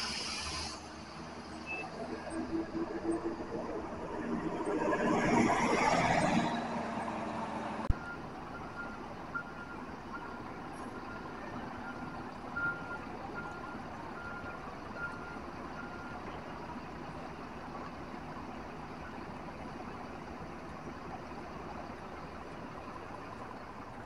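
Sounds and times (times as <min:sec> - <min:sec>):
bus diesel engine: 0:00.0 - 0:24.0
reversing alarm beeping: 0:07.9 - 0:16.2.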